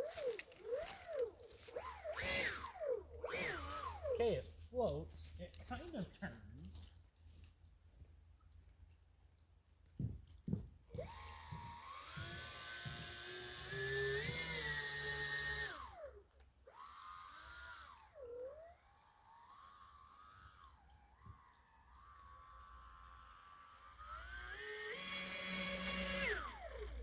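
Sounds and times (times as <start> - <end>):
model boat motor whining: 0.0 - 4.4, 10.9 - 27.0.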